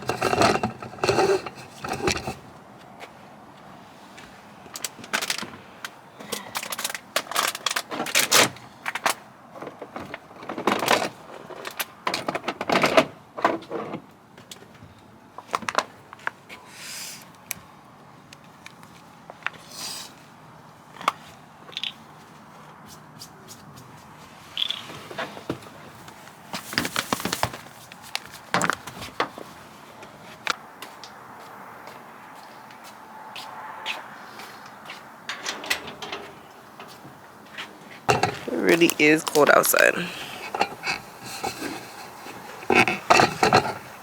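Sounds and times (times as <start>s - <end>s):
objects knocking and clicking: 37.9s - 41.8s, 42.6s - 43.9s.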